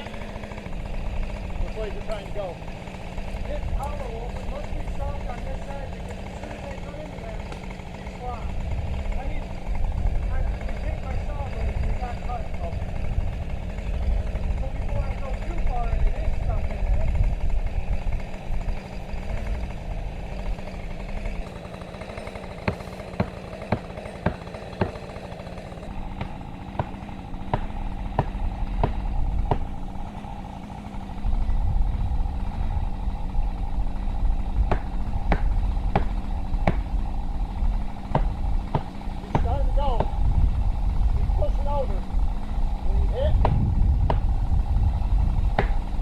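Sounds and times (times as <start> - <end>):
chainsaw running: 0.0 - 46.0
wedges struck with sharp knocks: 22.6 - 25.1, 26.1 - 29.7, 34.7 - 36.9, 38.1 - 40.1, 43.4 - 44.3, 45.5 - 45.9.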